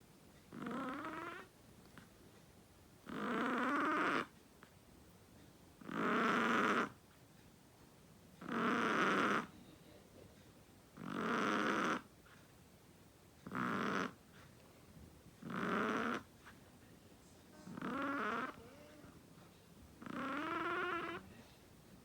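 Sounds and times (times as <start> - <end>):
dog snoring: 0.5 - 1.5, 3.0 - 4.4, 5.8 - 7.0, 8.4 - 9.5, 11.0 - 12.1, 13.4 - 14.4, 15.4 - 16.5, 17.5 - 19.2, 20.0 - 21.4.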